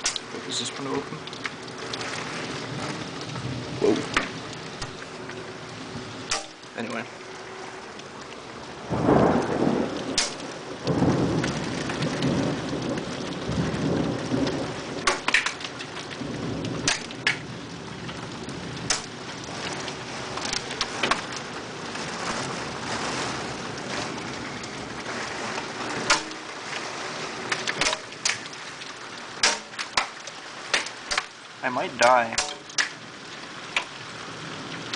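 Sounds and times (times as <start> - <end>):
thunder rumbling: 0.0 - 6.3, 8.4 - 29.4
heavy rain pouring: 0.0 - 34.9
raindrops tapping close by: 0.0 - 34.9.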